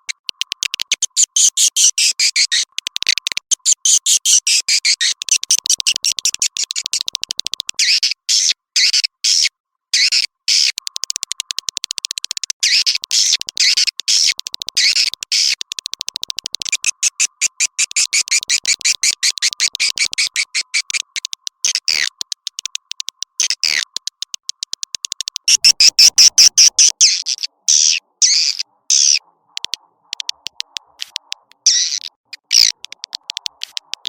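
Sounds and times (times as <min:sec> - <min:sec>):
swiftlet chirps and clicks: 0:00.0 - 0:08.2, 0:10.0 - 0:34.0.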